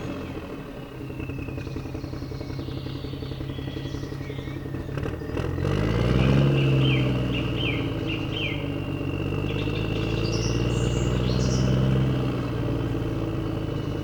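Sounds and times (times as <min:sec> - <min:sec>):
birds chirping: 0:00.0 - 0:14.0
engine-like drone: 0:00.0 - 0:14.0.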